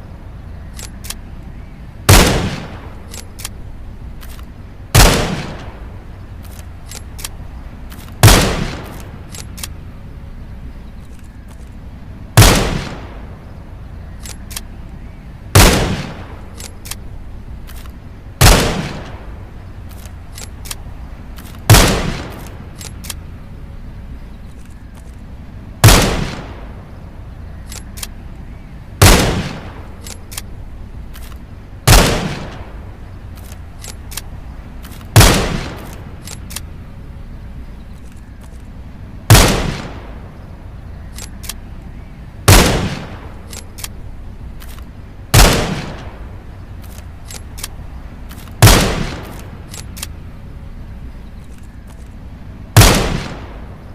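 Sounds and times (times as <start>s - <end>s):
rifle shots: 2.1s - 9.9s, 12.4s - 13.5s, 15.5s - 23.3s, 25.8s - 26.9s, 29.0s - 36.8s, 39.2s - 40.4s, 42.4s - 50.2s, 52.7s - 53.9s.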